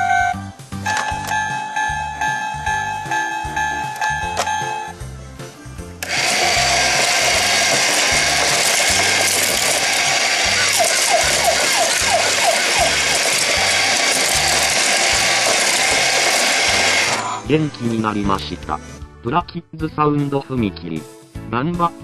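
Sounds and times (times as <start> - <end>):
background music: 0.0 - 22.0
toy motor whirring: 6.0 - 17.4.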